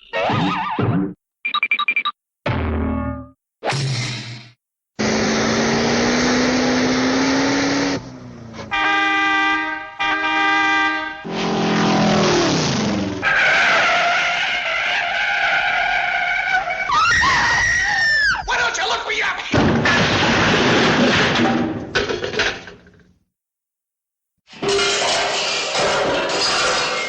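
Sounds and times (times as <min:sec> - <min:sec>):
cartoon car engine: 0:05.0 - 0:10.5, 0:11.1 - 0:17.2
car horn honks: 0:08.6 - 0:11.3
tyre screech: 0:13.2 - 0:18.4.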